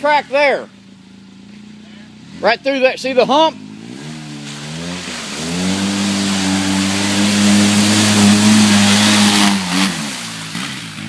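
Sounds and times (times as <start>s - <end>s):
engine revving high: 2.2s - 11.0s.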